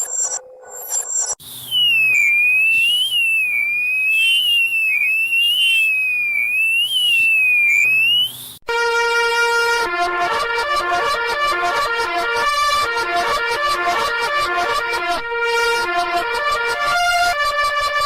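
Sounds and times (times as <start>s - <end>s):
electronic beeps: 0.0s - 8.5s
high electronic tone sliding: 0.0s - 8.6s
chord of horn-like tones: 8.7s - 18.0s.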